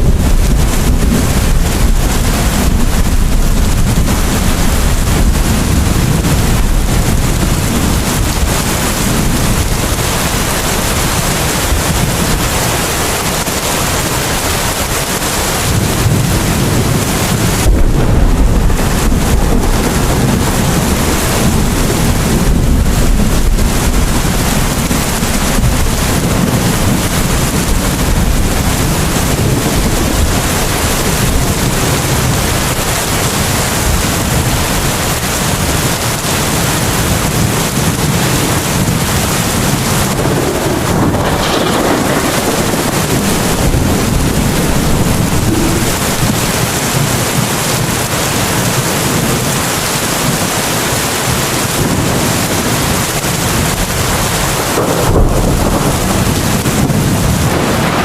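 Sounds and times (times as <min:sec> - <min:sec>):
low rumble: 0:00.0 - 0:12.6, 0:15.7 - 0:32.8, 0:39.1 - 0:48.1, 0:54.6 - 0:58.0
heavy rain: 0:00.0 - 0:58.0.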